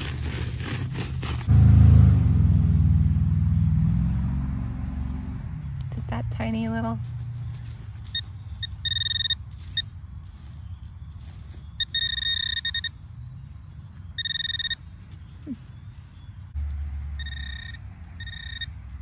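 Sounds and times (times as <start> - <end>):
metal detector buzzing beeps: 8.1 - 9.9, 11.8 - 13.0, 14.2 - 14.8, 17.2 - 18.8.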